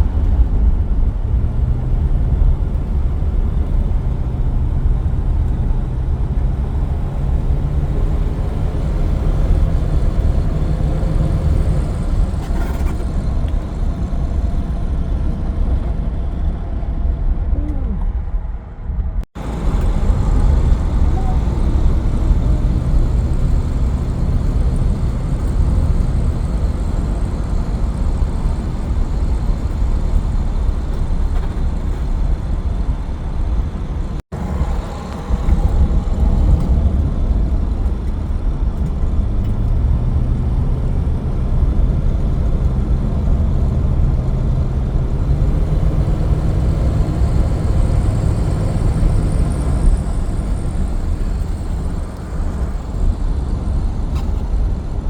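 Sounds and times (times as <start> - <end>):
car engine running: 0.0 - 55.0
road rumble: 0.0 - 55.0.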